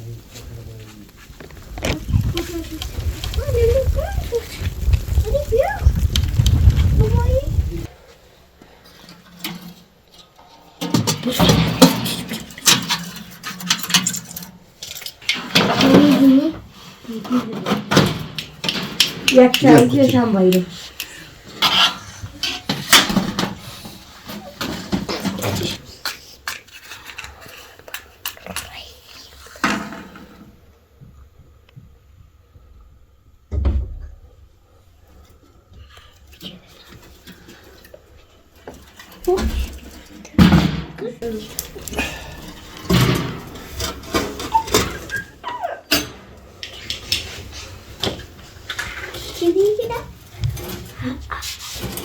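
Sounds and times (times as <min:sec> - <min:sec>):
knocks and clatters: 0:10.8 - 0:16.4, 0:17.3 - 0:23.7, 0:38.6 - 0:45.2.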